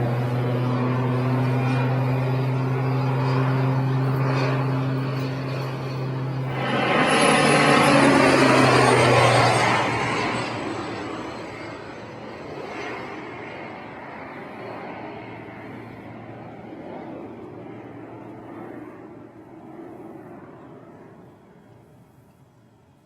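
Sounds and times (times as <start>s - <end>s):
airplane passing low overhead: 0.0s - 23.0s.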